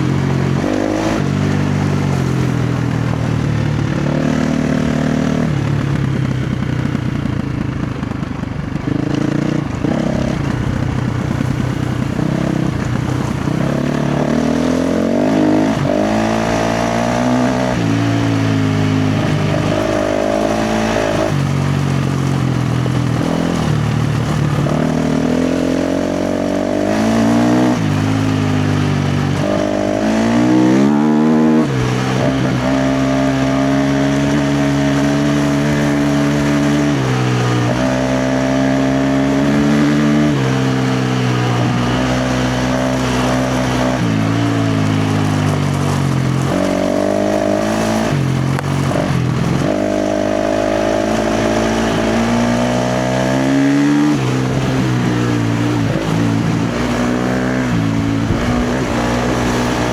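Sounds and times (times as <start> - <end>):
dirt bike engine revving: 0.0 - 59.9.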